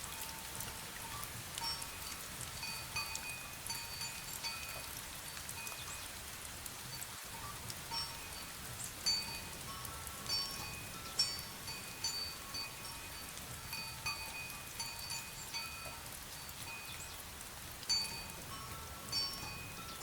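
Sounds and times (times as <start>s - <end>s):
light rain hissing: 0.0s - 20.0s
wind chime ringing: 9.1s - 16.0s, 17.9s - 20.0s.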